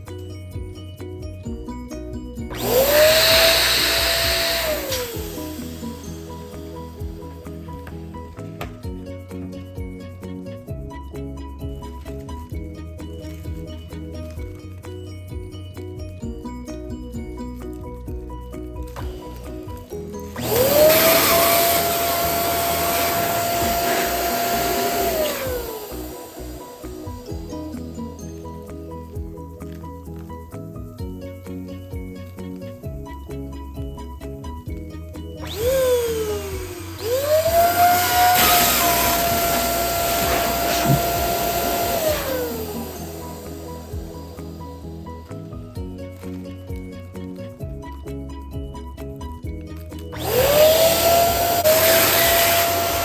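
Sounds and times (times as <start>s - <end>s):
balloon pump motor whine: 2.4s - 9.0s, 18.9s - 28.3s, 35.4s - 45.0s, 50.2s - 53.0s.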